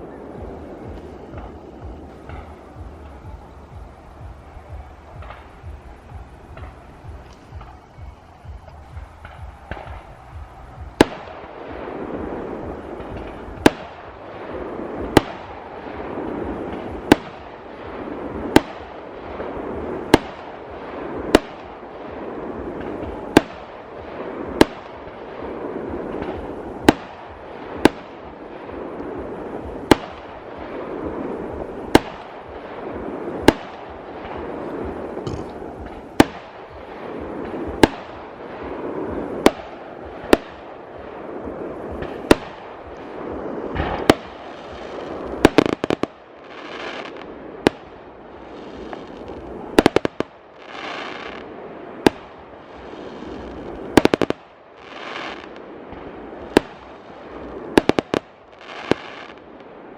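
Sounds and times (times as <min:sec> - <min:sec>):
fireworks bursting with sharp bangs: 0:00.0 - 0:59.9
noisy rush: 0:00.0 - 0:59.9.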